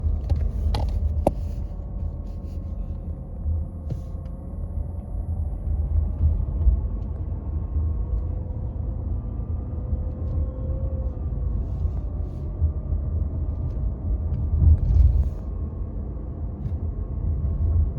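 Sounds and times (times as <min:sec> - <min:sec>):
road and drivetrain rumble: 0:00.0 - 0:17.9.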